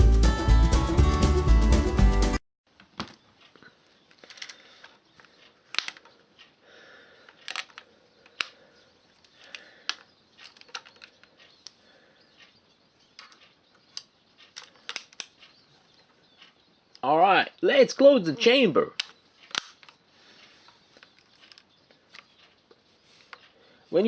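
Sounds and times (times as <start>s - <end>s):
light rustling: 19.0s - 23.8s.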